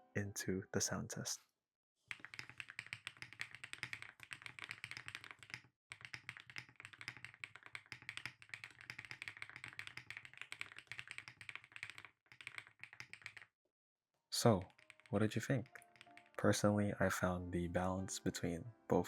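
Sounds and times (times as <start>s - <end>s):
mechanical keyboard typing: 2.1s - 13.5s, 14.4s - 16.8s.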